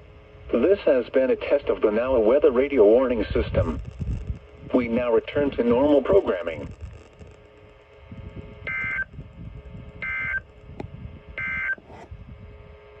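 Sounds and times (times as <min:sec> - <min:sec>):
two-tone warbling data bursts: 0:08.7 - 0:09.1, 0:10.0 - 0:10.5.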